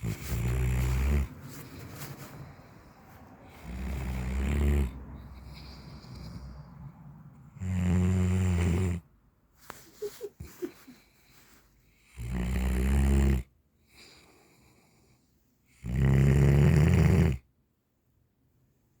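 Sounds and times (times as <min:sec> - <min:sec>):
dog snoring: 0:00.0 - 0:06.7, 0:07.4 - 0:09.1, 0:12.0 - 0:15.1, 0:15.7 - 0:17.5.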